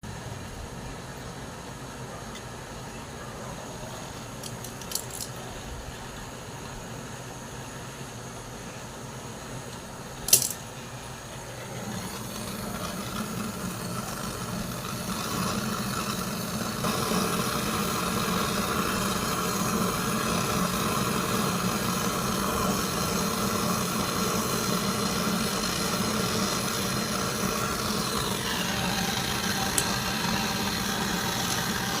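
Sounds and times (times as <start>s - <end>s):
motor humming: 11.3s - 32.0s.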